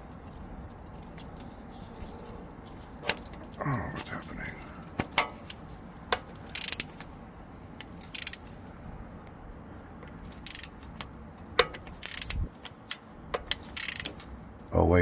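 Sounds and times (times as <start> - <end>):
ratchet wrench clicking: 0.0 - 3.5, 4.8 - 7.1, 7.8 - 8.7, 10.2 - 14.3.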